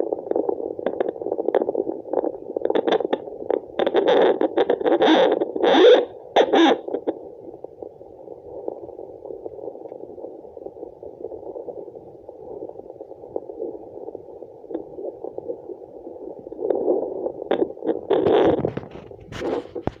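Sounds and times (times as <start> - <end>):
loud scratchy bursts: 16.7 - 20.0.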